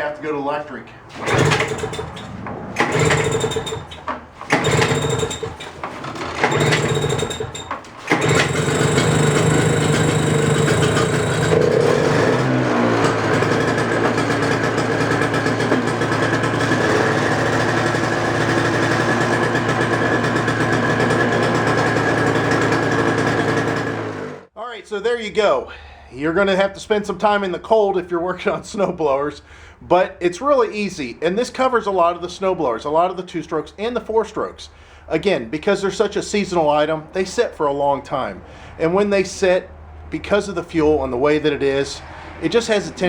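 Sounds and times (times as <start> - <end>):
snowblower engine cranking: 0.0 - 24.5, 40.2 - 43.0
snowblower engine running: 0.0 - 24.5, 41.0 - 43.0.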